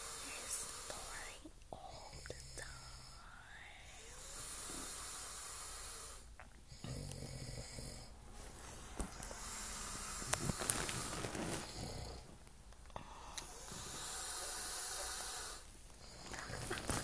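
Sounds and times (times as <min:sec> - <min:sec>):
man snoring: 0:01.9 - 0:08.2, 0:09.2 - 0:12.3, 0:13.0 - 0:16.7.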